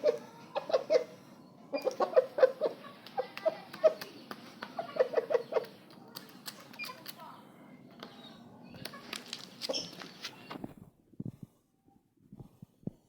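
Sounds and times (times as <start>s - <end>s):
young rooster clucking: 0.0s - 5.8s.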